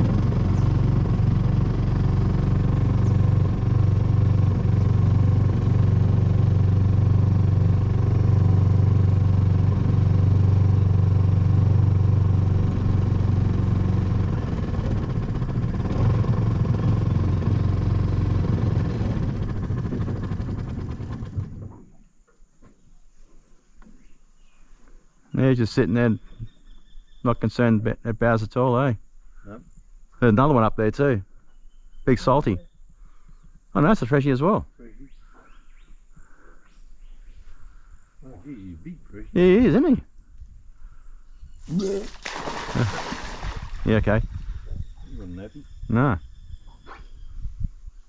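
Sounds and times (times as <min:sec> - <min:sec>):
outboard motor running: 0:00.0 - 0:22.0, 0:41.7 - 0:44.6.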